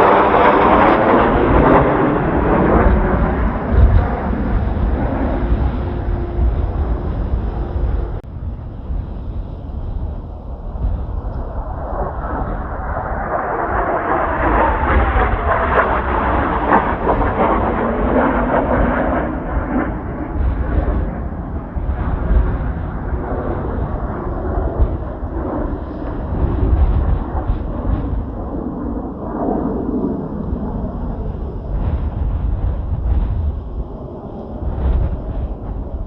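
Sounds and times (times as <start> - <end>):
jet aircraft flying past: 0.0 - 36.0
wind rumble on microphone: 0.0 - 36.0.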